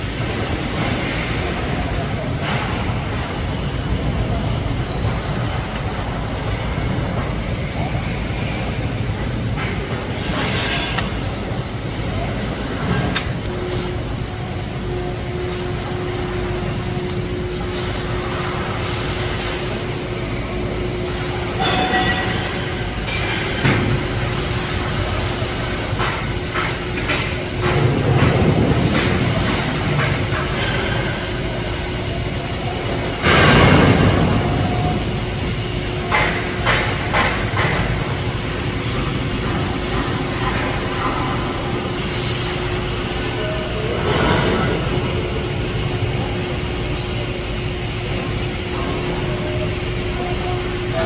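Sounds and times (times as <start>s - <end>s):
machinery rumble and hum: 0.0s - 51.0s
metal clanking and ringing: 21.4s - 23.6s.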